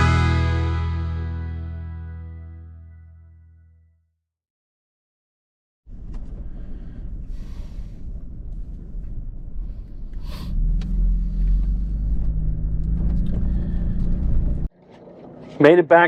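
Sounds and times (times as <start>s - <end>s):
truck engine and tyres rumbling: 5.9s - 16.0s.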